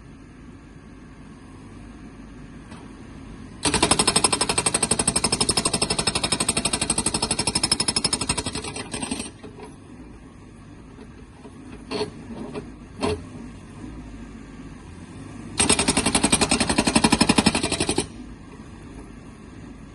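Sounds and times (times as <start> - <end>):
backhoe engine running: 0.4 - 19.9
hydraulic breaker hammering: 3.6 - 9.4, 15.6 - 18.2.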